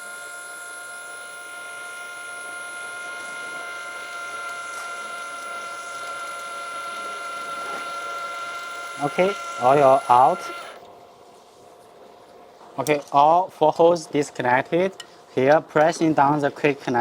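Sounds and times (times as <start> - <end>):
hydraulic pump whining: 0.0 - 10.9.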